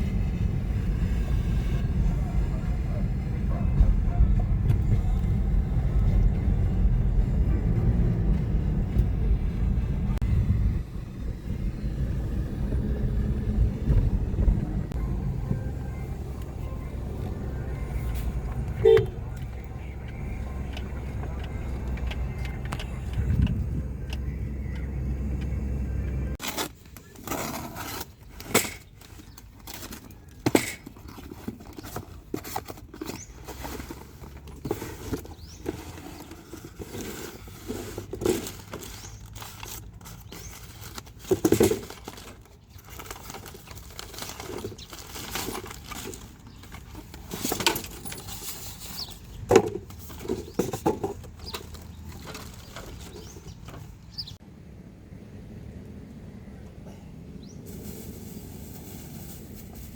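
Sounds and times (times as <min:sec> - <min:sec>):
low engine rumble: 0:00.0 - 0:59.9
small hard objects clinking: 0:26.4 - 0:53.6.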